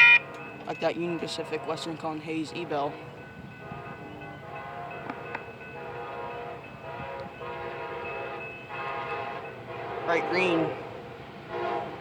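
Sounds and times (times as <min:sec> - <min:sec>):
locomotive horn chord: 0:03.6 - 0:12.0.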